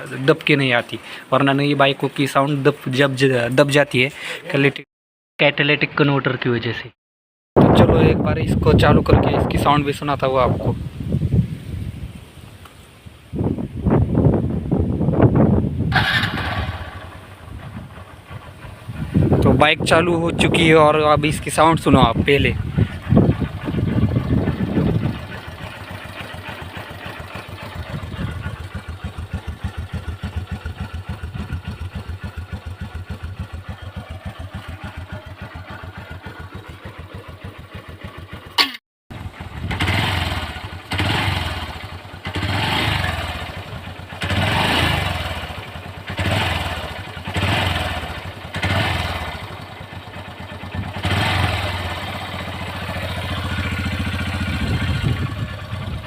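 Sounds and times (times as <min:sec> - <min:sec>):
motorcycle engine idling and revving: 0:13.5 - 0:56.0.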